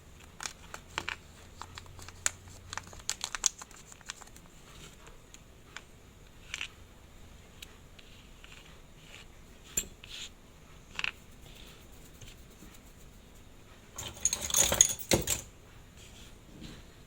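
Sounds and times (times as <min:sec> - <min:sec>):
small metal tools clinking: 0:14.0 - 0:15.5.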